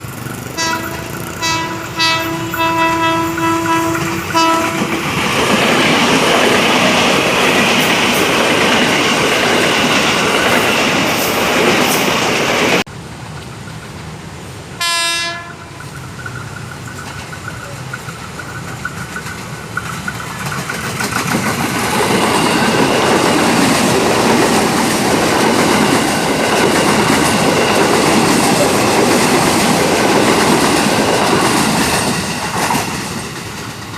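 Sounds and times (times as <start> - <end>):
train wheel rumble and rail clatter: 0.0 - 33.9
train horn blasts: 0.6 - 5.1, 14.8 - 15.8.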